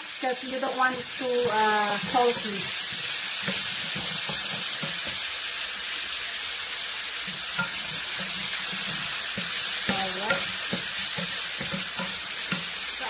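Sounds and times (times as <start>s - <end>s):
food sizzling in a pan: 0.0s - 13.0s
utensil scraping a pan: 1.4s - 5.3s, 7.2s - 13.0s.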